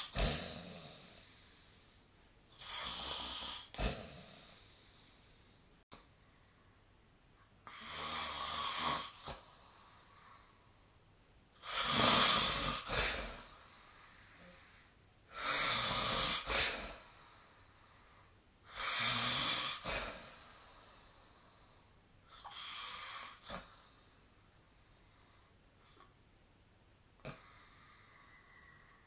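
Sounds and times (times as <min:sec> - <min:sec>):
person snoring: 0:00.0 - 0:05.4, 0:07.6 - 0:10.1, 0:11.6 - 0:17.1, 0:18.7 - 0:20.7.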